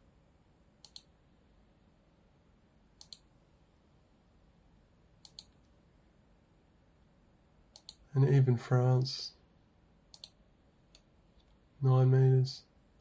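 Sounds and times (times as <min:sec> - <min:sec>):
faint room hiss: 0:00.0 - 0:13.0
computer mouse clicks: 0:00.8 - 0:01.1, 0:03.0 - 0:03.3, 0:05.2 - 0:05.8, 0:07.7 - 0:08.0, 0:10.1 - 0:11.6.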